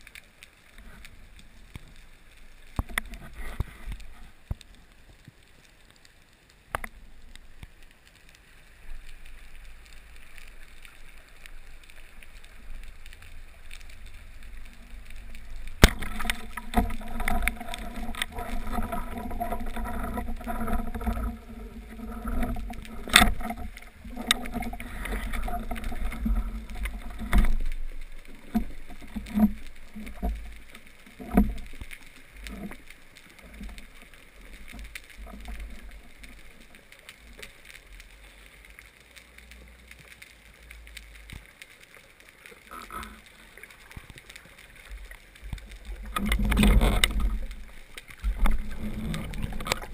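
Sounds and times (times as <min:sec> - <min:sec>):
water churning and sloshing: 0:08.8 - 0:38.8, 0:41.3 - 0:49.9.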